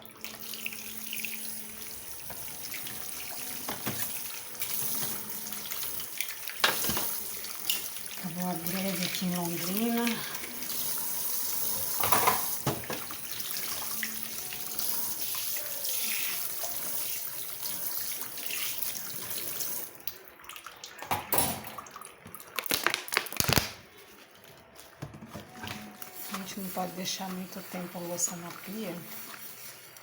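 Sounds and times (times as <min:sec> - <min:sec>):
tap running into a sink: 0:03.6 - 0:04.2, 0:11.8 - 0:13.8.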